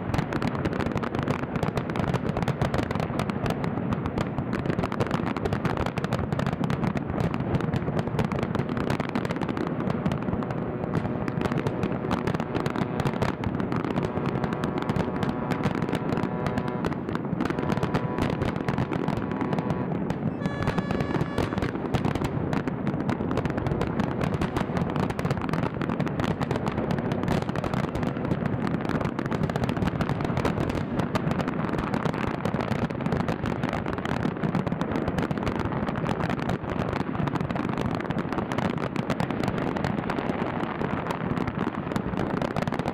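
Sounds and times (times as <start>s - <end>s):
fireworks crackling and banging: 0.0s - 42.9s
faint steady tones: 10.1s - 25.0s.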